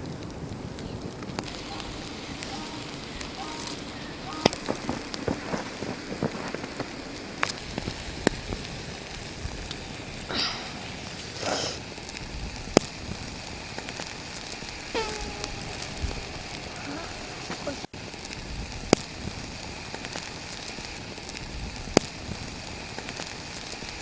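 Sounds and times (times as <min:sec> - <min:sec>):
cooking fire crackling: 0:00.0 - 0:24.0
sizzling hiss: 0:00.0 - 0:24.0.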